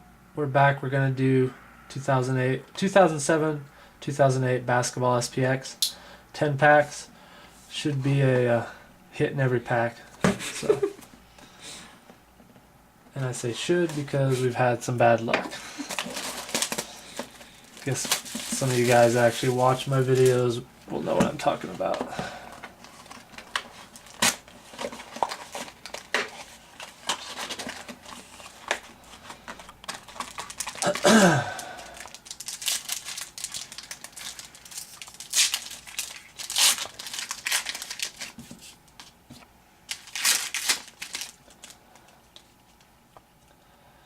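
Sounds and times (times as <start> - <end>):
wrappers torn and crinkled: 15.8 - 20.4, 22.8 - 28.8, 29.5 - 38.4, 39.9 - 41.8.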